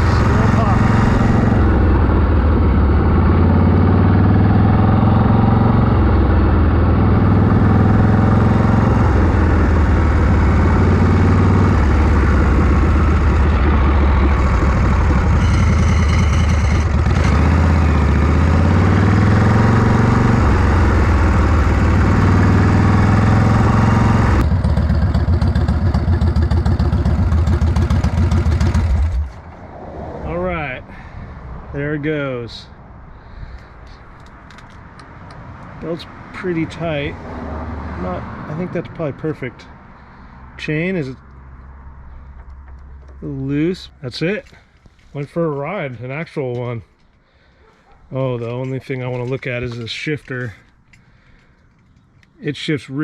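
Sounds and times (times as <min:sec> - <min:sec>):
motorcycle engine running: 0:00.0 - 0:29.5.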